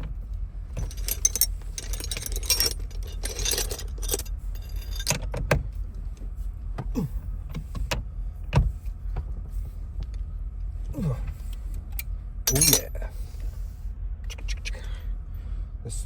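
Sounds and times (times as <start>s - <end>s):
metal parts and tools clinking: 0.8s - 5.3s, 12.5s - 13.0s.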